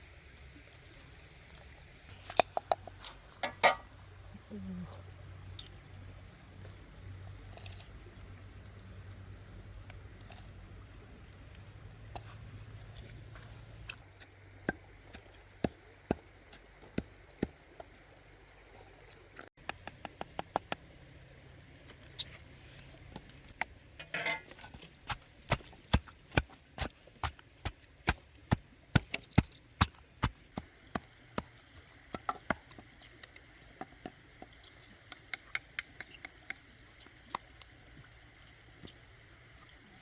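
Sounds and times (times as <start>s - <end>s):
knife chopping on wooden board: 25.1s - 28.2s.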